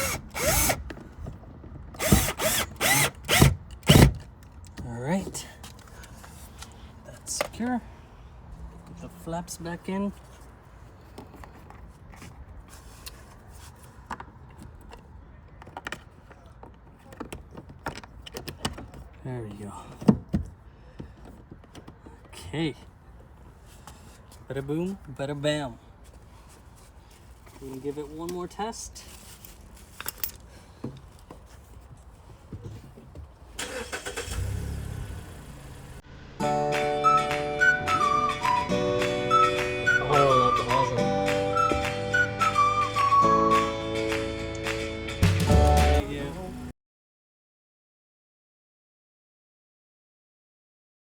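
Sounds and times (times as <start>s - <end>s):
car engine starting: 33.6s - 38.9s.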